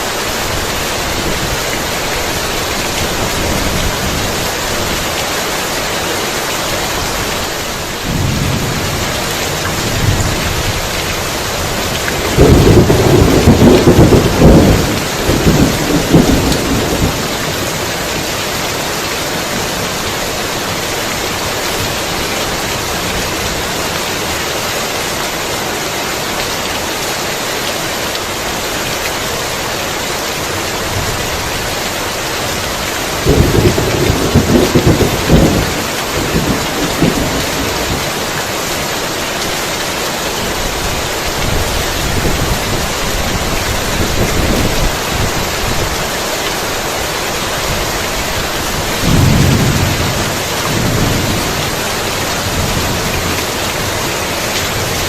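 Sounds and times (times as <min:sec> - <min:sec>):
heavy rain falling: 0:00.0 - 0:55.0
thunder rumbling: 0:08.1 - 0:18.0, 0:33.2 - 0:38.3, 0:47.7 - 0:53.9.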